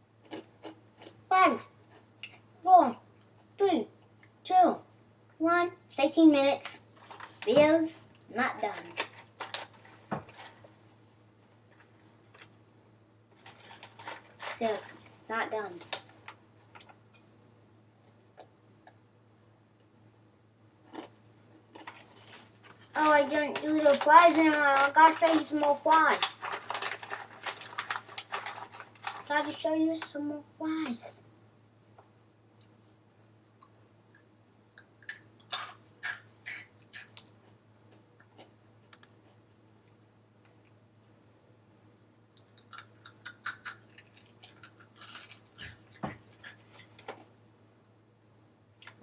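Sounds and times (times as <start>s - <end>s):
low room hum: 0.0s - 49.0s
snack bag crackling: 8.7s - 10.7s, 13.3s - 15.0s, 21.7s - 29.6s, 42.5s - 47.3s.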